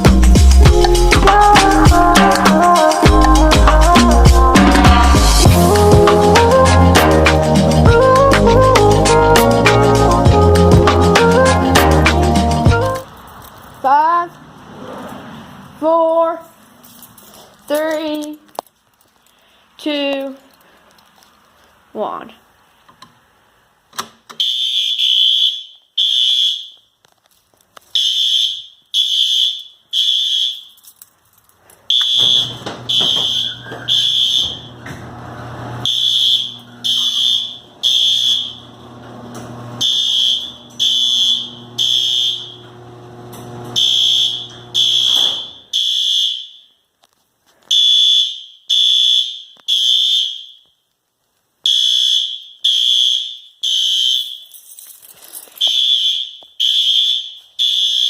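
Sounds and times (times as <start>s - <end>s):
fire alarm beeping: 24.4s - 26.9s, 28.0s - 30.8s, 31.9s - 35.0s, 35.8s - 39.0s, 39.8s - 46.9s, 47.7s - 50.8s, 51.7s - 54.5s, 55.6s - 58.0s.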